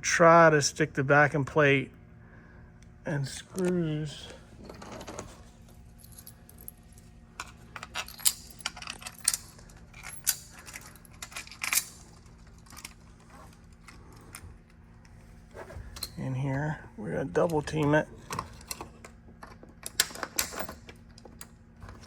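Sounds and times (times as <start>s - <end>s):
metal screws clinking and rattling: 6.0s - 13.1s.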